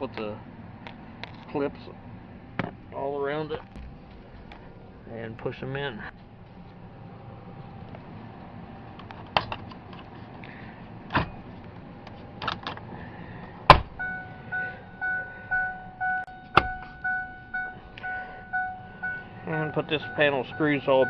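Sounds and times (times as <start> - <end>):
car warning chime beeping: 14.0 - 21.0.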